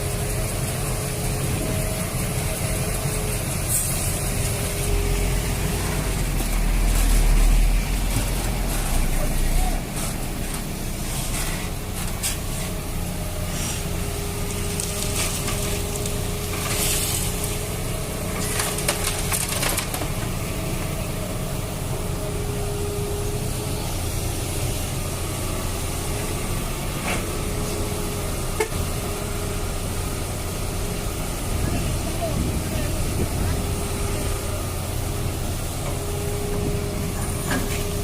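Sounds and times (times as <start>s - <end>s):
scraping and crunching of sand: 2.0s - 19.6s.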